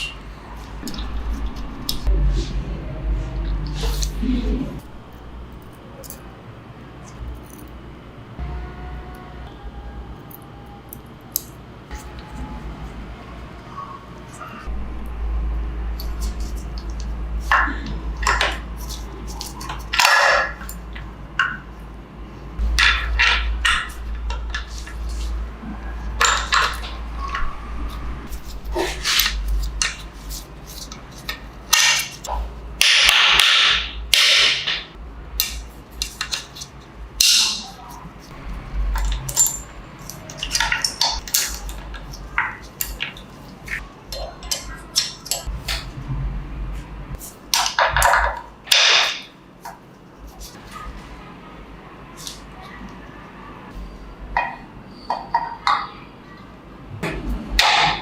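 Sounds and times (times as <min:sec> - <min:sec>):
low steady hum: 0:00.0 - 0:34.2
noisy burst: 0:08.1 - 0:18.3
metal tools clinking on workbench: 0:39.0 - 0:41.8.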